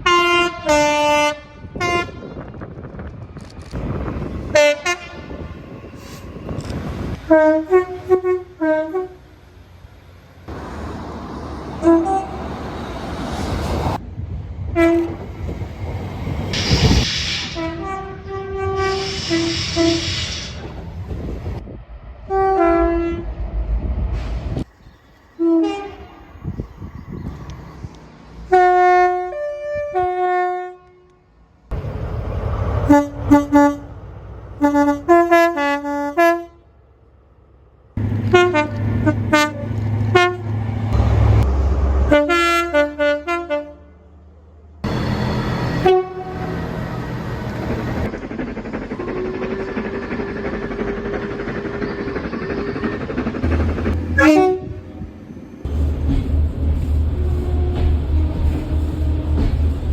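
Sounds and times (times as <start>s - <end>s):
two-tone train horn: 0.0s - 2.5s, 4.5s - 5.4s, 7.2s - 9.4s, 11.8s - 12.6s, 14.8s - 15.2s, 17.5s - 20.1s, 22.3s - 23.4s, 25.4s - 26.3s, 28.5s - 31.3s, 32.9s - 33.9s, 34.6s - 36.7s, 38.0s - 41.2s, 42.0s - 44.0s, 44.9s - 47.0s, 54.1s - 55.0s, 57.2s - 59.5s
diesel engine and rail rumble: 0.0s - 59.9s.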